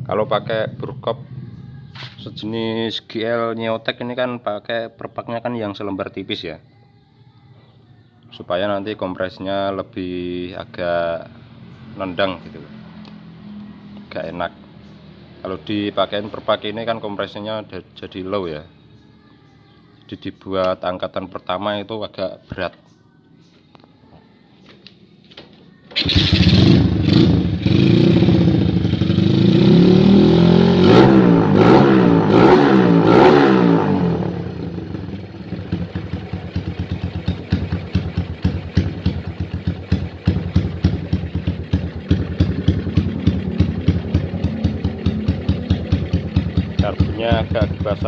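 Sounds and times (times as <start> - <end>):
motorcycle engine starting and revving: 25.9 - 48.0.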